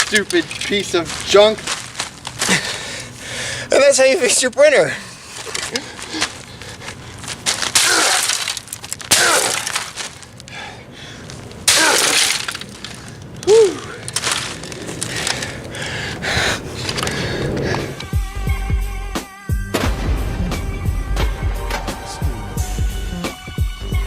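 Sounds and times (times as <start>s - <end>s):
plastic crashing and breaking: 0.0s - 2.9s, 7.2s - 10.4s, 11.6s - 15.8s.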